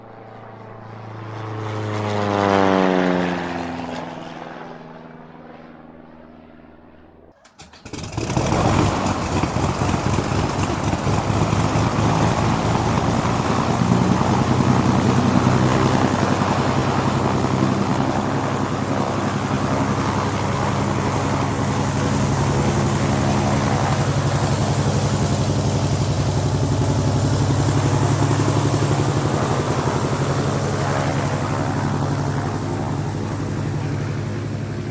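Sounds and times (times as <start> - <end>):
propeller airplane passing by: 0.0 - 34.9
close propeller engine running: 7.4 - 34.9.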